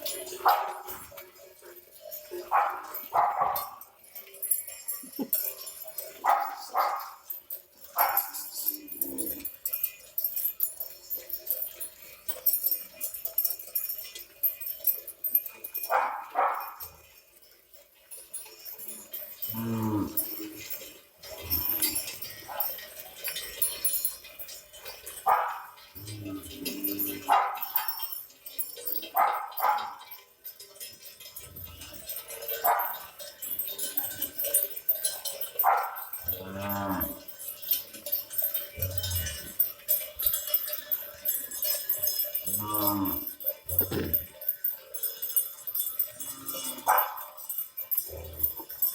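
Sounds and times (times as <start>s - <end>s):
cattle bells jingling: 0.0s - 48.9s
dog barking: 0.4s - 1.2s, 2.4s - 4.0s, 6.2s - 7.3s, 8.0s - 8.5s, 15.8s - 17.0s, 22.5s - 22.8s, 25.2s - 25.8s, 27.2s - 28.1s, 29.1s - 30.2s, 32.6s - 33.1s, 35.6s - 36.7s, 46.9s - 47.4s.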